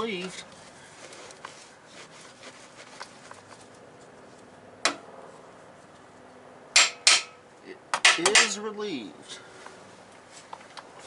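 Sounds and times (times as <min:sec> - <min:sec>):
loud metal clank: 0:06.8 - 0:07.4
sharp metallic clink: 0:06.8 - 0:07.4.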